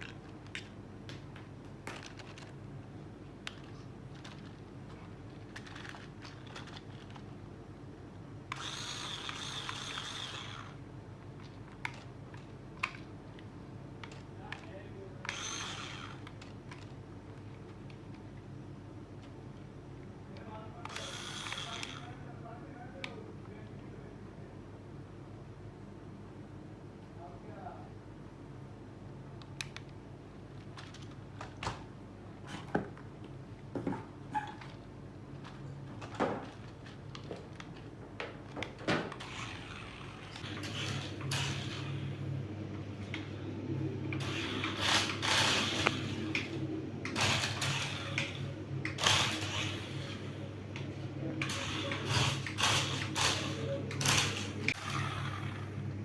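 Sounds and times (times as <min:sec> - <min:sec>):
toy car electric motor whirring: 0:05.5 - 0:07.2, 0:08.5 - 0:10.8, 0:15.2 - 0:16.9, 0:20.8 - 0:22.3, 0:39.1 - 0:42.4, 0:44.1 - 0:50.5, 0:51.4 - 0:55.9
steady low hum: 0:39.2 - 0:56.0.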